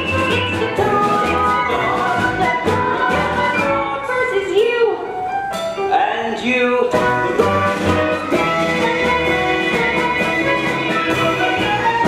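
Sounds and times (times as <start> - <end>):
band playing instrumental: 0.0 - 4.1, 6.9 - 12.0.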